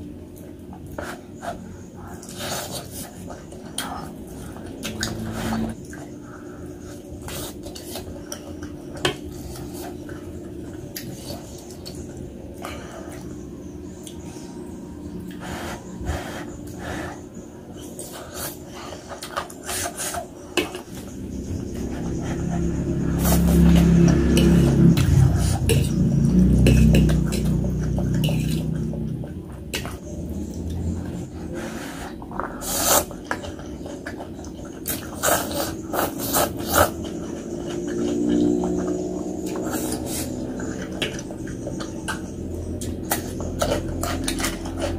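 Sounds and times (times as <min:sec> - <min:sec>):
wet slurping and chewing: 0:00.3 - 0:13.4, 0:15.2 - 0:44.9
wet chewing and smacking: 0:32.2 - 0:44.9.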